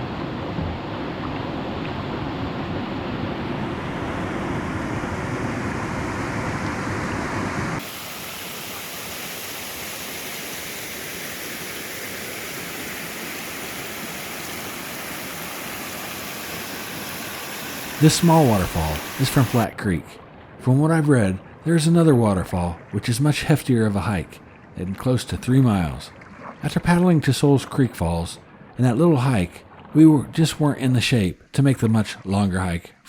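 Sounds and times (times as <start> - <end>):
low water rumble: 0.0 - 32.8
small waterfall hissing: 7.8 - 19.7.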